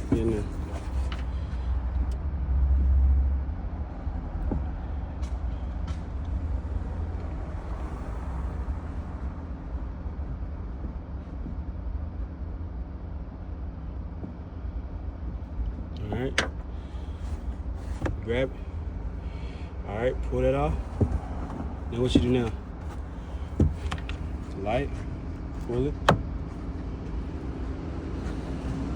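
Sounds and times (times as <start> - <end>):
vehicle rumble: 0.0 - 28.9.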